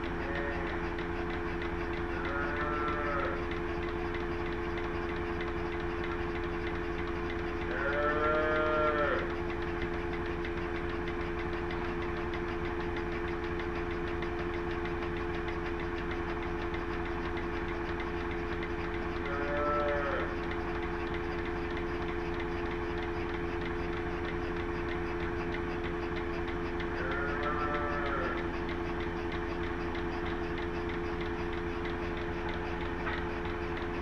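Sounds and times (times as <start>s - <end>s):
steady machine hum: 0.0s - 34.0s
cow mooing: 2.2s - 3.4s, 7.7s - 9.3s, 19.3s - 20.3s, 27.0s - 28.4s.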